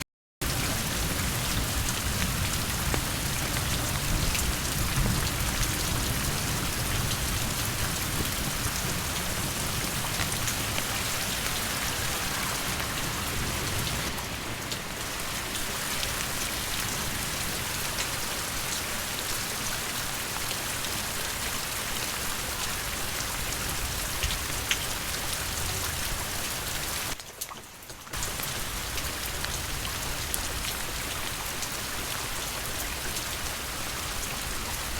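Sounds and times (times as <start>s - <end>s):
raindrops ticking sharply: 0.4s - 19.4s
steady rain falling: 0.4s - 34.9s.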